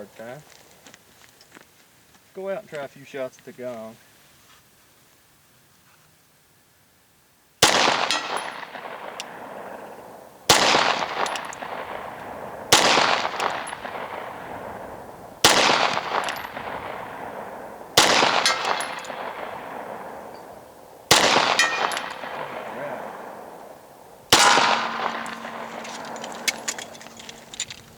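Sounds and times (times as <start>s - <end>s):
pistol shots: 7.6s - 27.7s
steel gong ringing: 24.4s - 27.4s.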